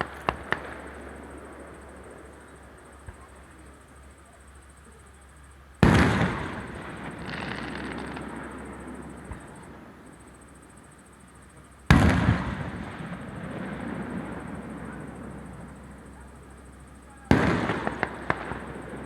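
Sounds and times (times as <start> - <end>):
firework shell burst booming: 5.8 - 9.6, 11.9 - 15.8.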